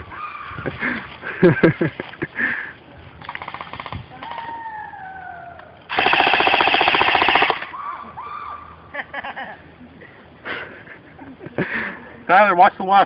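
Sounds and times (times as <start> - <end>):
sharp cracks: 3.2 - 4.6, 5.6 - 7.8
airsoft gun full-auto bursts: 3.3 - 4.0, 5.9 - 7.7.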